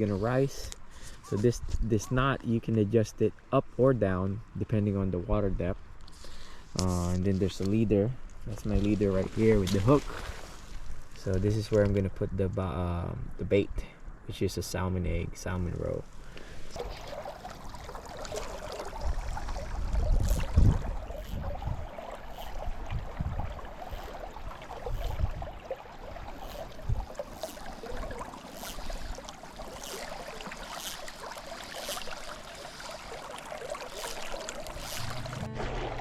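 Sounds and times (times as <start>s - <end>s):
low thumps: 34.9s - 36.0s.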